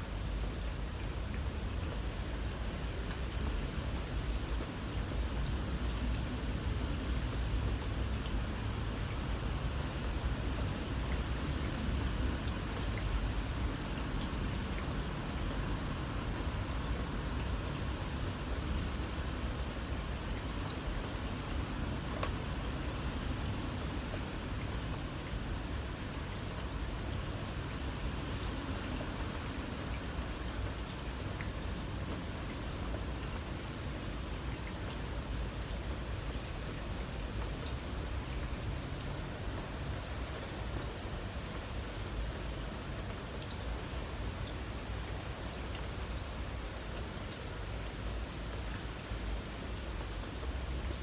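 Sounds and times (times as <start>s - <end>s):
insect chirping: 0.0s - 5.1s, 11.3s - 38.1s.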